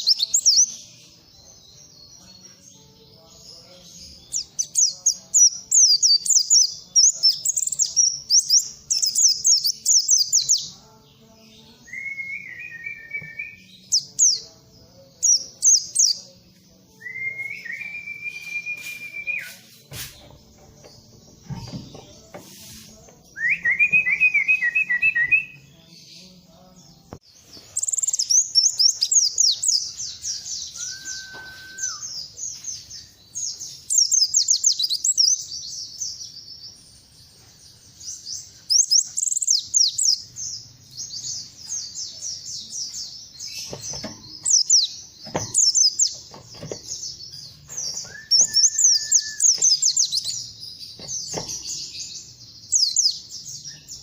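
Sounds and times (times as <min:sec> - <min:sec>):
whistled bird notes: 0:17.0 - 0:19.8, 0:27.8 - 0:32.4, 0:47.7 - 0:50.4
songbird twittering: 0:47.8 - 0:54.0.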